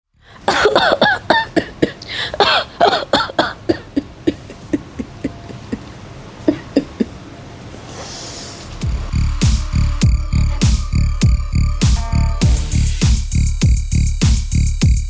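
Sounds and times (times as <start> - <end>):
person coughing: 0.4 - 7.2.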